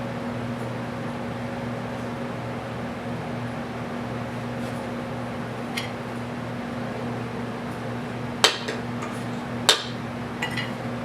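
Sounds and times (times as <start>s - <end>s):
low appliance hum: 0.0s - 11.0s
mixing bowl knocking baking pan: 8.4s - 10.0s.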